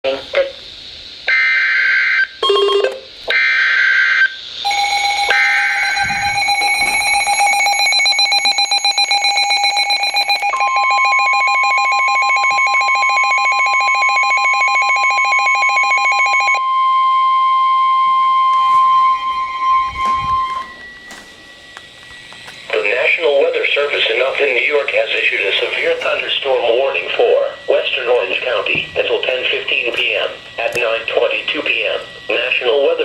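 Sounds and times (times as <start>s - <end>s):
digital data bursts: 3.4s - 16.6s
electronic attention tone: 4.6s - 23.4s.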